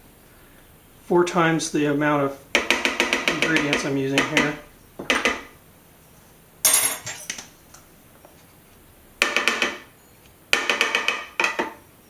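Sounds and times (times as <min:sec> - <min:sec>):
utensil clattering against container: 0:06.7 - 0:07.5.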